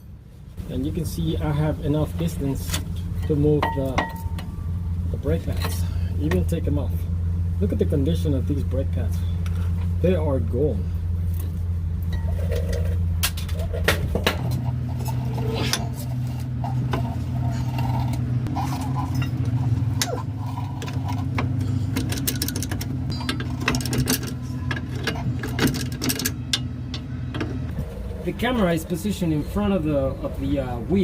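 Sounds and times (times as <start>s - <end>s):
low motor drone: 0.6s - 31.0s
metallic clicks and knocks: 20.8s - 27.6s.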